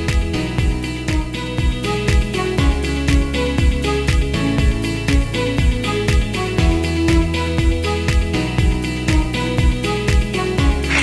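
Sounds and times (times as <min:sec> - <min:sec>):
drum hits: 0:00.0 - 0:02.3.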